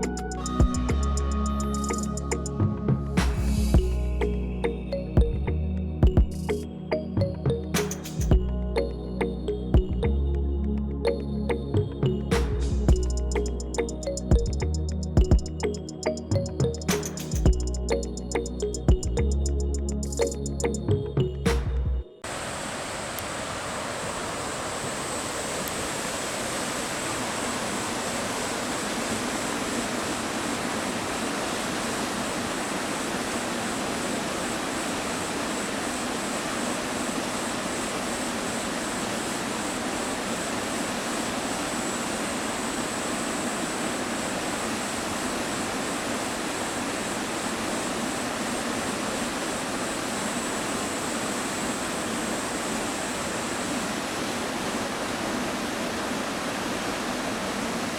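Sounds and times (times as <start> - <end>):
waterfall rushing: 22.2 - 57.9.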